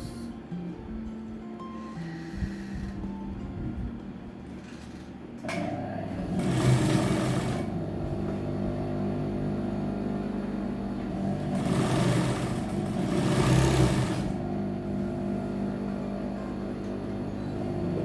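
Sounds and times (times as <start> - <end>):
sewing machine stitching: 4.8 - 8.5, 11.0 - 14.6.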